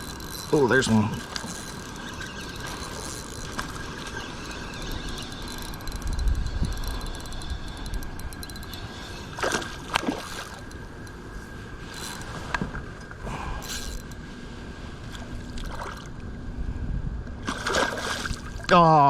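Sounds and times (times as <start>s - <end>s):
sharp splashes or knocks: 17.4s - 18.7s.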